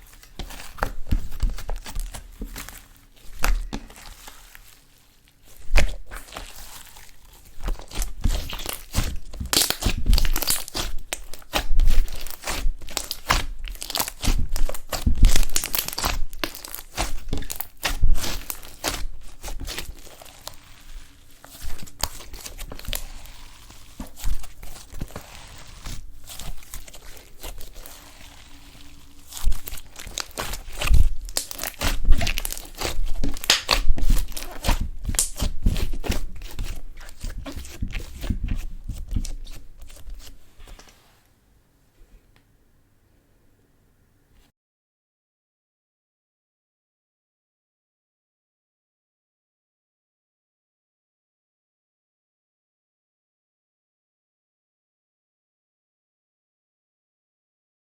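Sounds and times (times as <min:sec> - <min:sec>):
slime squished by hand crackling: 0:00.0 - 0:40.9.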